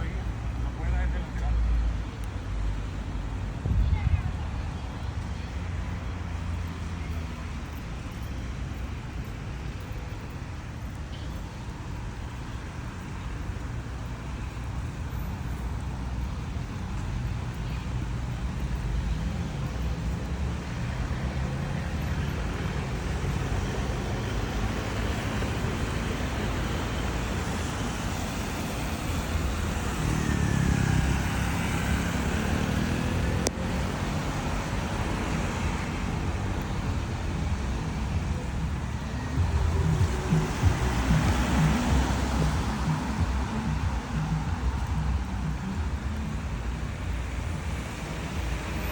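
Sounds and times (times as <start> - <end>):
road traffic rumble: 0.0 - 48.9
vehicle engine tone dipping and rising: 18.4 - 48.9.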